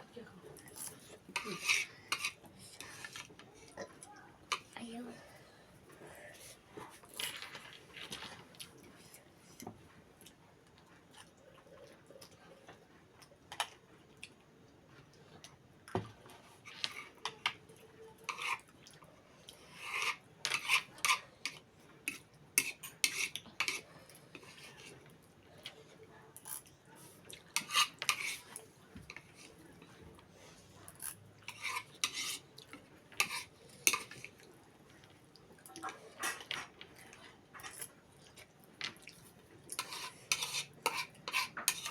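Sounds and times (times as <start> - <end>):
cutlery clinking on a plate: 39.8 - 41.9.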